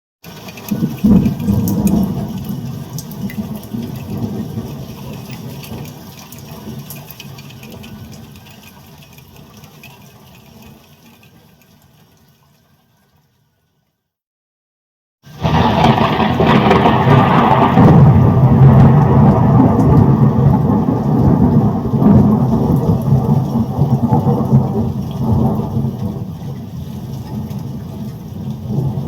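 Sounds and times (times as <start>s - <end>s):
thunder rumbling: 0.7s - 6.9s, 15.3s - 29.0s.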